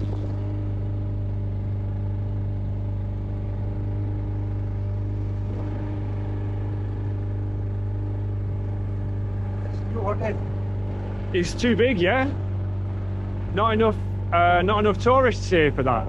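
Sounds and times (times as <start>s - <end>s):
boat engine running: 0.0s - 16.0s.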